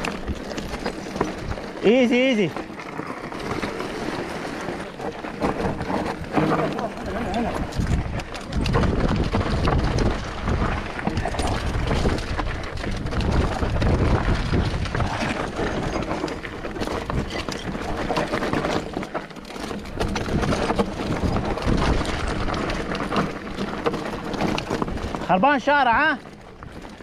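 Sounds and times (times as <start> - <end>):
bike rattling: 0.0 - 27.0
tyres on loose rock: 0.0 - 27.0
wind rumble on microphone: 5.4 - 18.8, 19.8 - 25.3.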